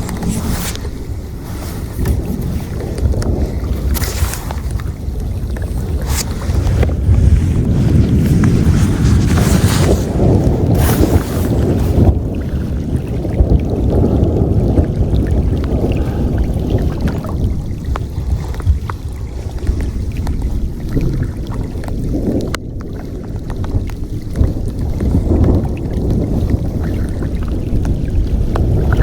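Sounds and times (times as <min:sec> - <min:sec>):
storm wind buffeting microphone: 0:00.0 - 0:29.0
water moving: 0:00.0 - 0:29.0
light ticks of rain: 0:02.8 - 0:05.8, 0:17.9 - 0:29.0.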